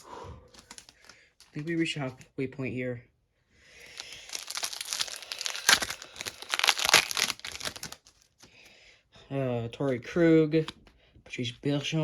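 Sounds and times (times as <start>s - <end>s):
foil wrapper crinkling: 3.8s - 8.3s.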